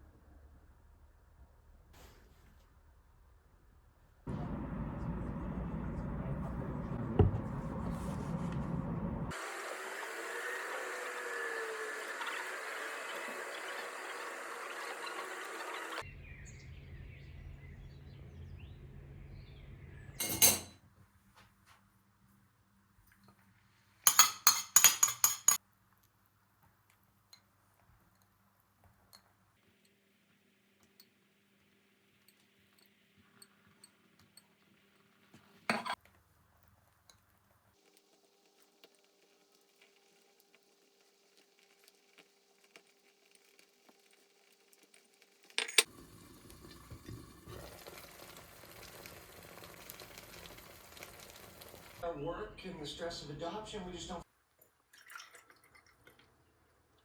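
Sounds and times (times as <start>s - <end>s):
hard objects clinking: 24.1s - 25.6s.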